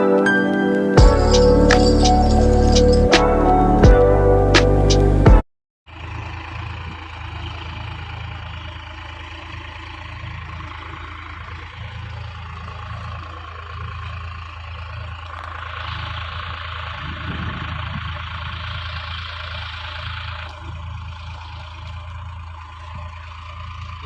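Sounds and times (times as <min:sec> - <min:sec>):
music: 0:00.0 - 0:05.4
tractor engine running: 0:00.0 - 0:24.0.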